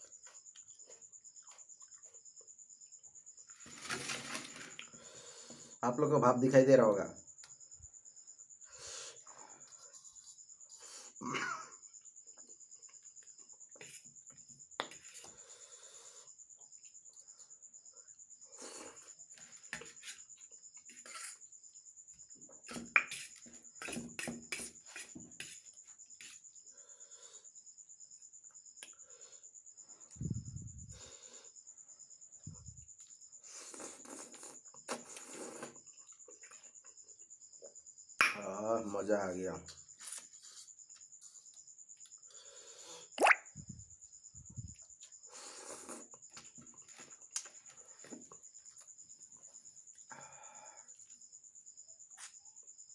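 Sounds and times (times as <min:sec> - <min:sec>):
cricket chirping: 0:00.0 - 0:52.9
chewing and slurping noodles: 0:33.6 - 0:36.7
wet mouth smack: 0:43.2 - 0:43.5.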